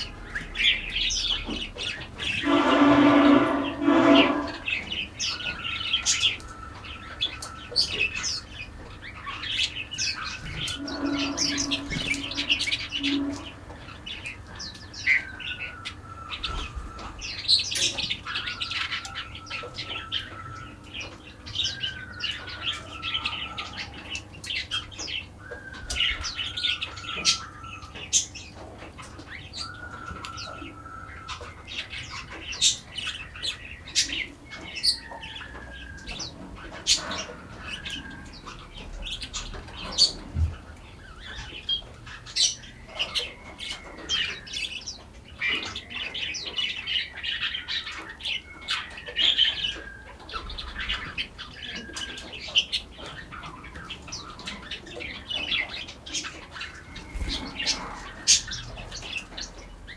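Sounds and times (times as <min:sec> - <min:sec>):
birds chirping and trilling: 0:00.0 - 0:59.9
bird whistled note: 0:02.4 - 0:04.9, 0:10.4 - 0:13.4.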